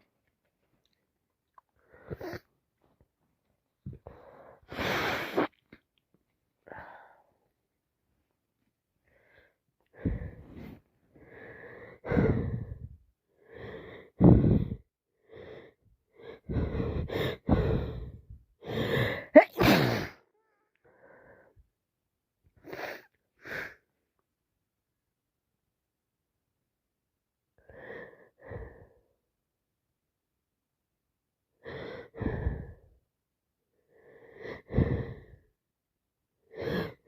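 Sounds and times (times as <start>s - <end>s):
wheezing gasping breaths: 4.0s - 5.6s, 9.1s - 20.2s, 31.6s - 32.9s, 33.9s - 35.5s, 36.5s - 37.0s
woman sneezing: 19.4s - 20.2s.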